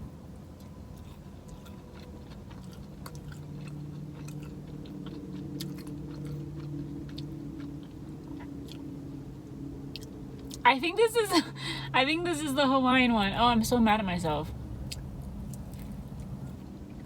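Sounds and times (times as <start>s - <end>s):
low steady hum: 0.0s - 17.0s
close-up chewing: 0.4s - 10.7s, 14.4s - 17.0s.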